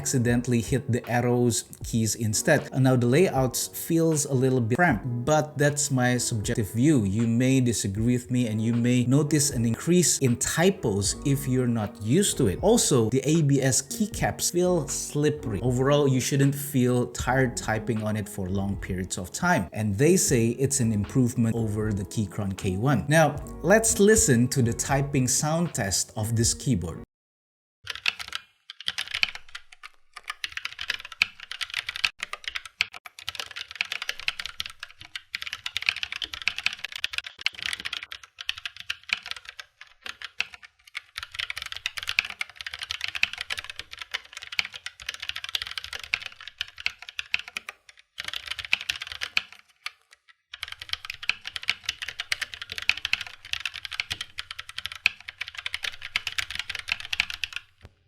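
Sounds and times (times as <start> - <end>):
mechanical keyboard typing: 27.9 - 57.9.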